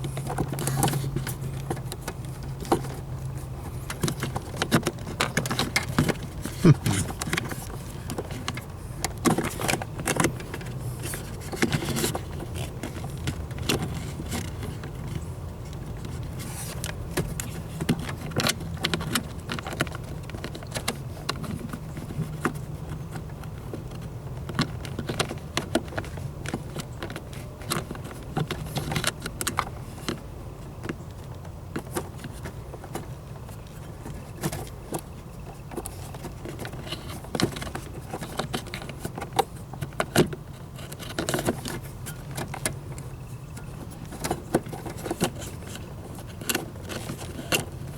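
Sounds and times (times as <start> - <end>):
steady low hum: 6.6 - 7.2.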